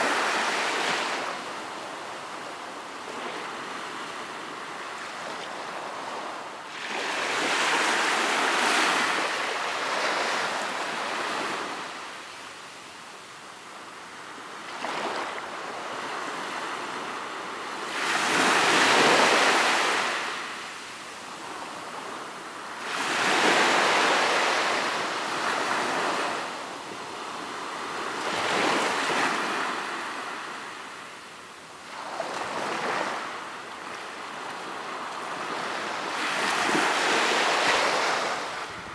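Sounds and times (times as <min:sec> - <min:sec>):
ocean waves breaking: 0:34.3 - 0:38.9
wind on microphone: 0:36.3 - 0:38.9.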